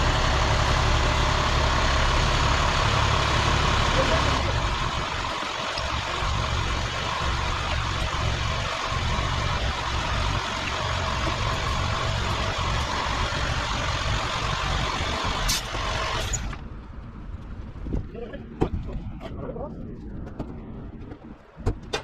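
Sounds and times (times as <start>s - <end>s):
truck diesel engine running: 0.0s - 17.2s.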